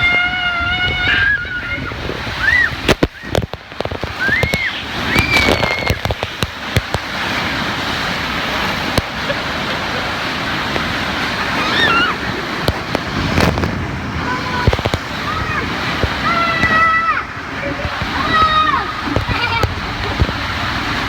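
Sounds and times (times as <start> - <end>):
child squealing: 0.0 - 2.8, 11.5 - 12.3
water rushing down waterslide: 0.0 - 21.0.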